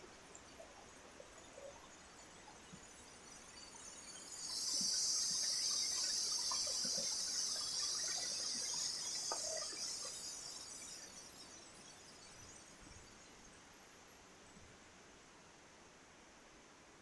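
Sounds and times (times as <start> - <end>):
faint chirps and ticks: 0.0 - 15.5
high-pitched insect chorus buzzing: 0.1 - 13.6.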